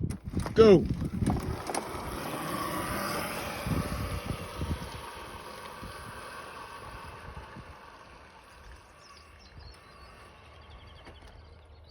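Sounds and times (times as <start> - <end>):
wind buffeting microphone: 0.0 - 11.9
outdoor background hiss: 0.6 - 11.8
faint bird chirps: 8.4 - 11.9.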